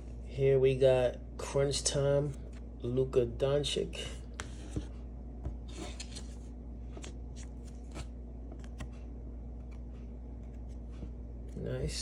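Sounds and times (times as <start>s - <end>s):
cards sliding and rustling: 4.4s - 9.0s.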